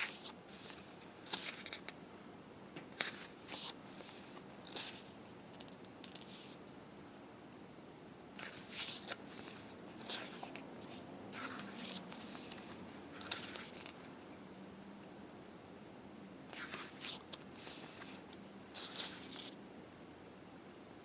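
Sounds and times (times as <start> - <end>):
pages being turned: 0.0 - 2.0, 3.0 - 6.6, 8.4 - 14.0, 16.5 - 19.6.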